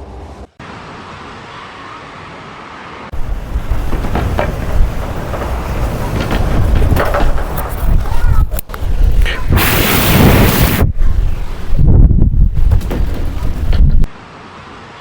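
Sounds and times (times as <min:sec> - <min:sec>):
wind buffeting microphone: 0:03.1 - 0:14.2
wind rushing: 0:03.1 - 0:14.2.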